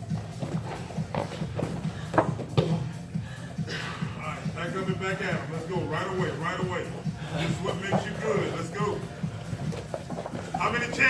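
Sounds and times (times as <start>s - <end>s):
footsteps and thumps on floor: 0.0s - 3.0s, 7.6s - 11.0s.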